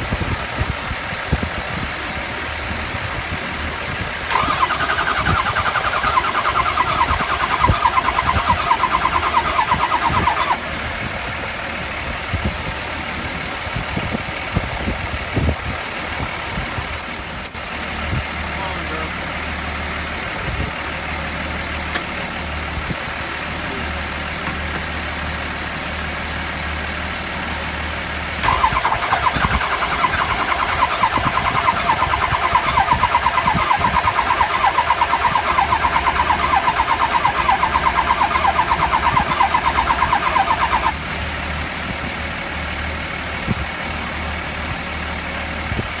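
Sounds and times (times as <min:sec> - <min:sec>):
starter cranking diesel engine: 0:00.0 - 0:46.0.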